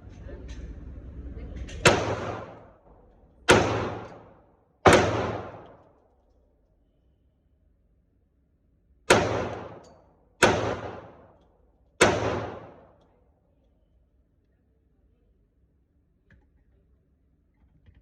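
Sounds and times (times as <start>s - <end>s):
gunshots with echoing decay: 1.8s - 2.8s, 3.5s - 5.9s, 9.1s - 11.4s, 12.0s - 13.0s.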